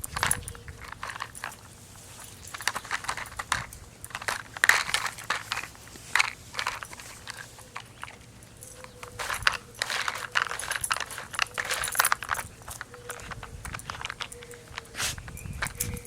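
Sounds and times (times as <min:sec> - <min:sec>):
dog chewing treats: 0:00.0 - 0:16.0
puzzle toy knocking and clattering: 0:02.5 - 0:14.9.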